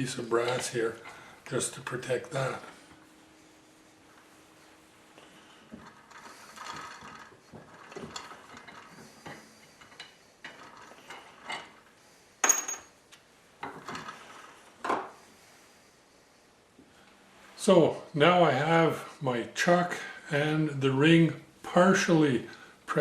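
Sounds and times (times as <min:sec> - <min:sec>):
bench vise tightening: 0:05.4 - 0:12.0.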